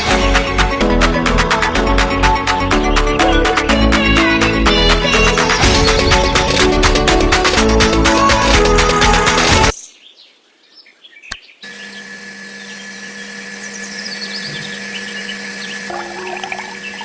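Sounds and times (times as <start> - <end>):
background music: 0.0 - 9.7
faint bird chirps: 9.8 - 17.0
steady hum: 11.6 - 17.0.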